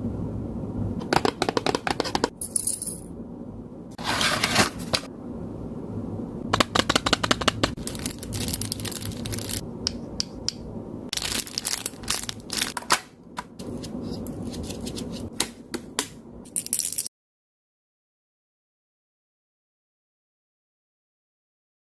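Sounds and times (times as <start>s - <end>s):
clicks and plastic crinkles: 7.7s - 9.6s, 11.1s - 13.1s.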